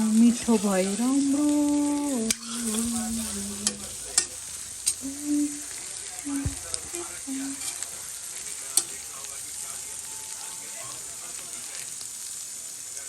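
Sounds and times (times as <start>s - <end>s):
meat sizzling in oil: 0.0s - 13.0s
utensil clicking against pan: 3.6s - 5.0s, 8.8s - 9.0s.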